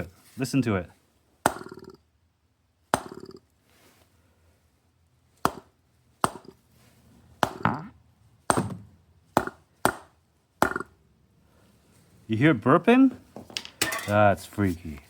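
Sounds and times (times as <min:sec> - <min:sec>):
wet burping gurgle: 0:01.6 - 0:02.0, 0:03.1 - 0:03.4.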